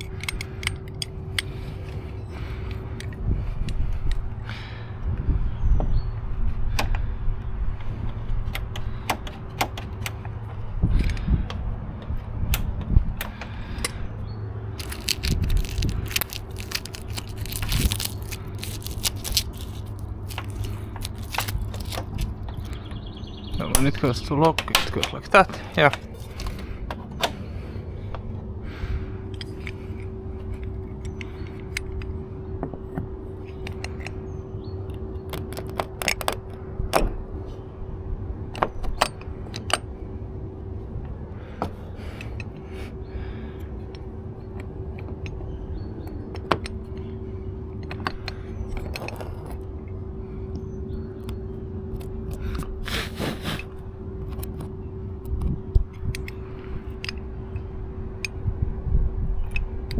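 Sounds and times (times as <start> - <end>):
clicks of small metal parts: 0.0 - 1.6, 14.8 - 22.8
metal parts scraping: 14.8 - 22.8, 25.6 - 26.6.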